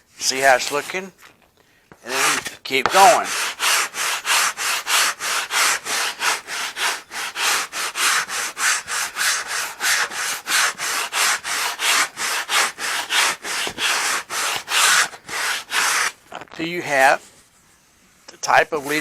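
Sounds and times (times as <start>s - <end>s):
sandpaper rubbing on wood: 0.2s - 1.0s, 2.1s - 16.2s, 18.7s - 19.0s.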